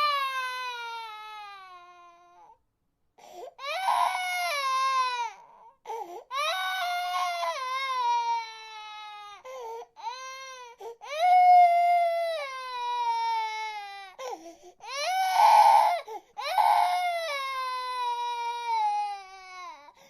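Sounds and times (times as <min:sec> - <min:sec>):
baby crying: 0:00.0 - 0:02.6, 0:03.6 - 0:20.0.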